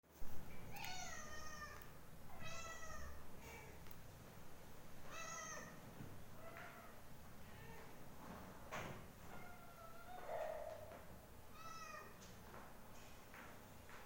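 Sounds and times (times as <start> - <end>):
cat meowing: 0.8 - 3.2.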